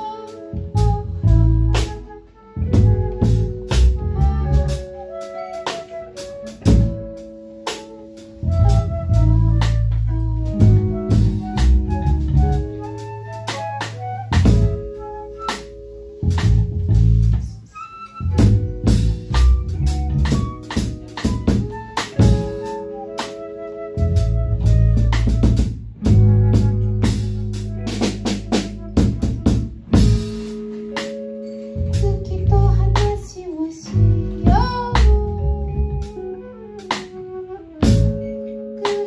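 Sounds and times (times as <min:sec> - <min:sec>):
bass: 0:00.0 - 0:39.0
drum kit beat: 0:00.0 - 0:39.0
melodic instruments: 0:30.4 - 0:35.6.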